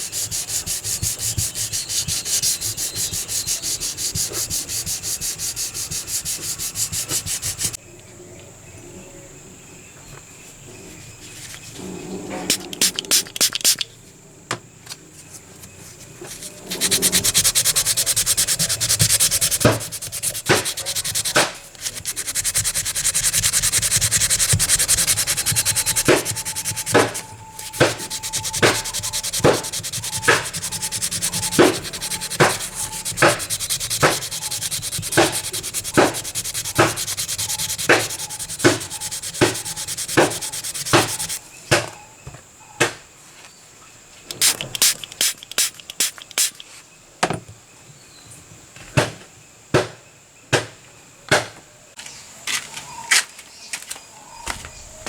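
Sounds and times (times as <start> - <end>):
hand sanding metal: 0.0 - 7.8, 12.5 - 13.8, 16.2 - 41.4, 44.3 - 46.6.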